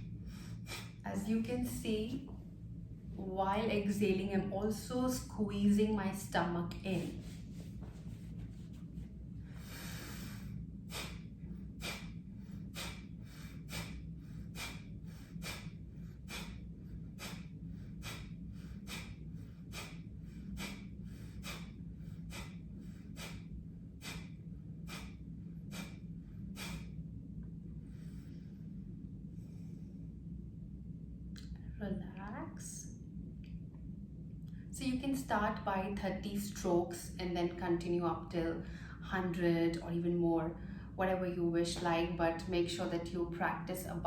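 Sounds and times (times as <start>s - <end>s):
person breathing in: 9.5s - 27.0s.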